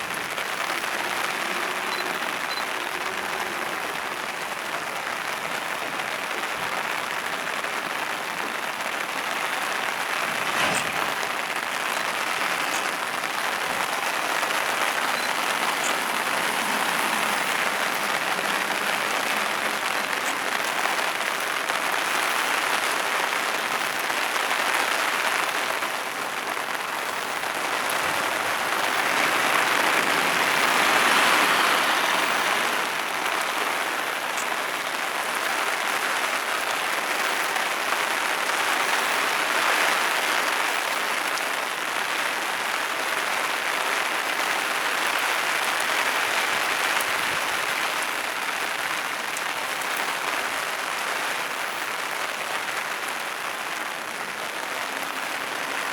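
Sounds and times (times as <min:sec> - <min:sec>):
freight train rolling past: 0:09.6 - 0:22.2.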